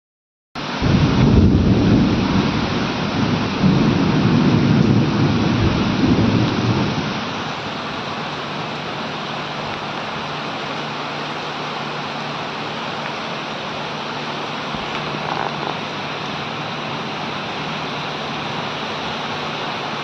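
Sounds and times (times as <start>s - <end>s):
rain falling: 0.6s - 20.0s
thunder rolling: 0.8s - 8.9s, 14.7s - 16.8s.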